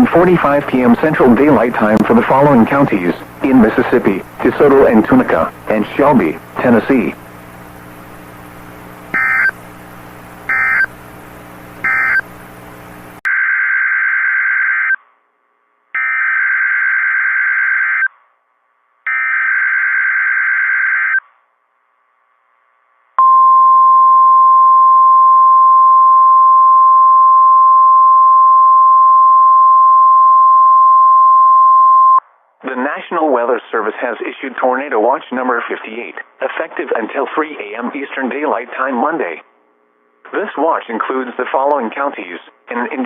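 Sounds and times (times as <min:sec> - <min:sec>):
loud steady alert tone: 0:10.5 - 0:10.9, 0:11.8 - 0:12.2.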